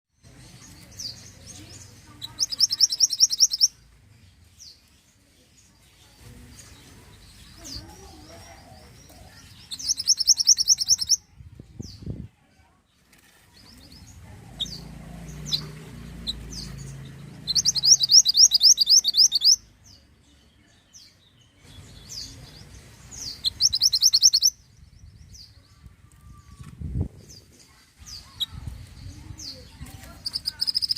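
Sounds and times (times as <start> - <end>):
bird chirps: 0.2 - 12.2, 13.6 - 30.9
bird singing rapid high notes: 0.4 - 3.8, 9.6 - 11.2, 14.5 - 19.7, 23.1 - 25.1, 30.2 - 30.9.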